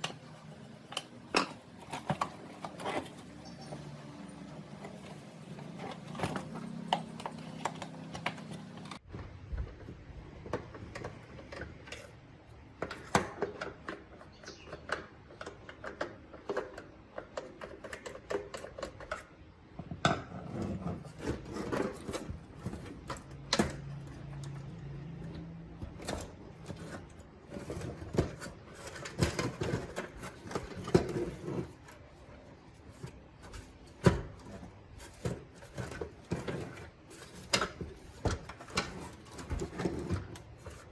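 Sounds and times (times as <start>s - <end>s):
small parts clicking and tapping: 5.8s - 19.7s.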